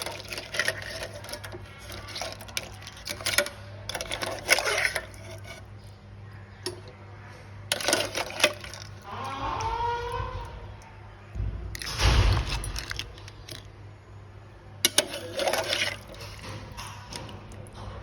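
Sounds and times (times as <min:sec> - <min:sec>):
kitchen utensils and dishes clattering: 0:00.0 - 0:05.7, 0:07.7 - 0:09.4, 0:11.8 - 0:13.6, 0:14.8 - 0:18.0
steady low hum: 0:00.0 - 0:18.0.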